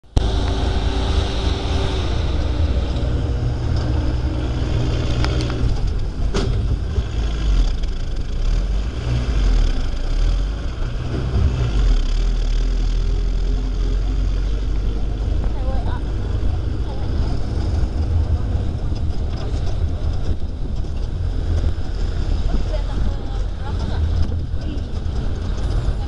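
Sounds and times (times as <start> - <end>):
off-road vehicle engine rumbling: 0.0 - 26.0.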